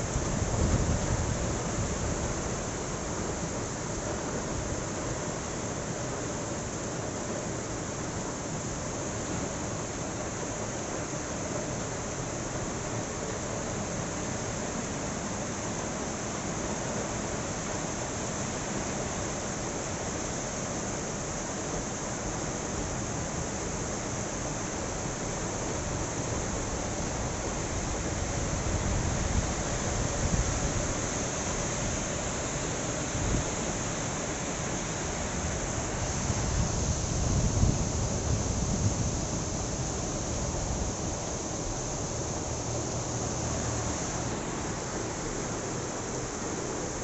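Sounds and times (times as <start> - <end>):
wind buffeting microphone: 0.0 - 2.3, 36.0 - 41.0
strong wind: 0.0 - 4.8, 25.4 - 47.0.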